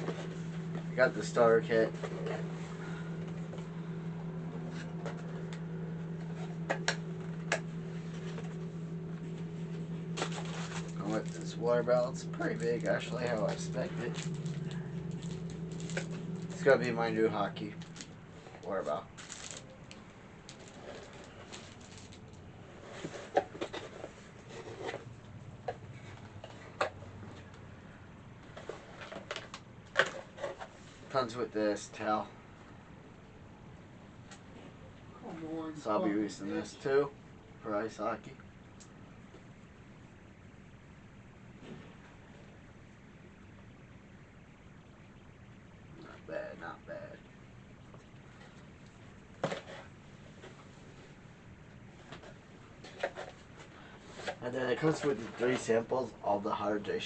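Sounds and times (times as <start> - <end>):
steady low hum: 0.0 - 57.0
packaging clicks and rustles: 19.2 - 22.4.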